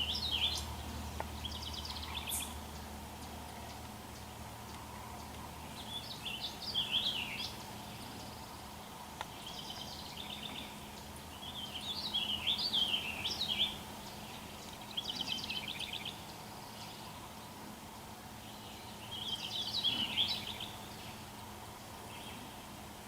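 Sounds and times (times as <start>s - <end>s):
low background hum: 0.0s - 23.0s
songbird warbling and trilling: 1.4s - 8.5s.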